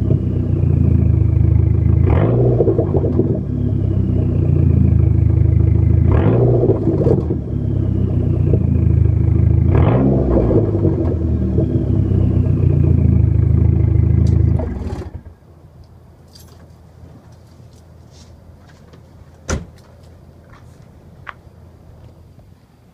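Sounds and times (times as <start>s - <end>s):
car engine revving and idling: 0.0s - 15.4s
engine rattle: 0.0s - 15.4s.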